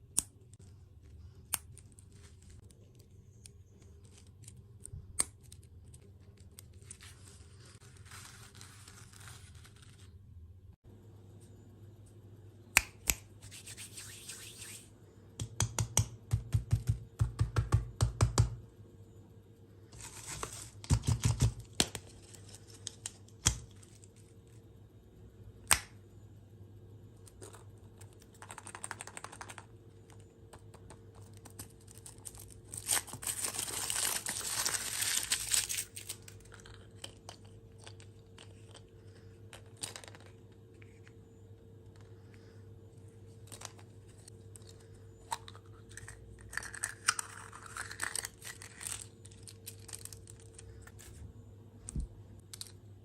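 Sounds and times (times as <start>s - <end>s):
taps and clicks: 15.4s - 18.6s
packaging tearing and crinkling: 31.6s - 37.2s.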